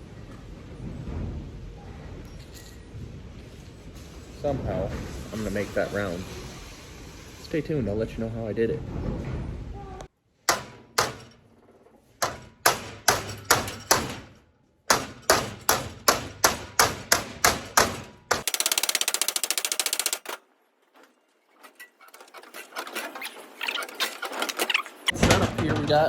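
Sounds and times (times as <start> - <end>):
rapid rattling: 15.0 - 20.4.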